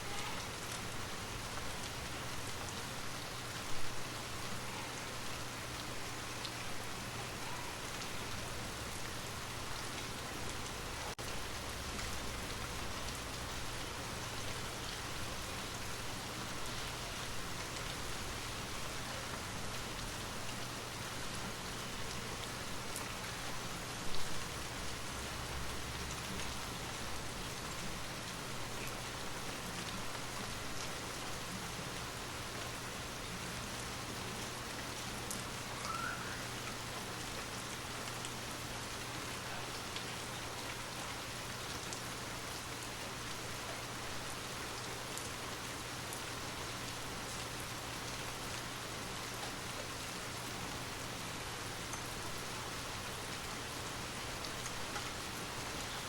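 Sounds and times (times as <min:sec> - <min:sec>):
rain pattering on a surface: 0:00.0 - 0:56.0.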